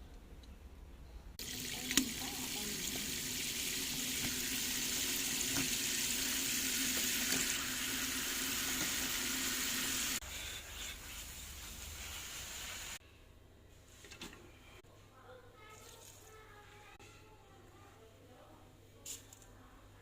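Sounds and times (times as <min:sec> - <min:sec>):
tap water running into sink: 0:01.4 - 0:10.2.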